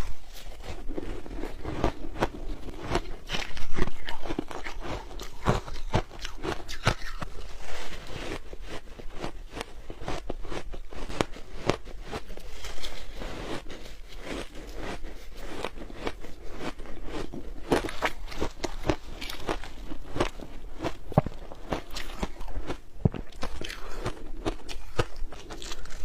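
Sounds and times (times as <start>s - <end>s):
ice being chewed: 0.0s - 26.0s.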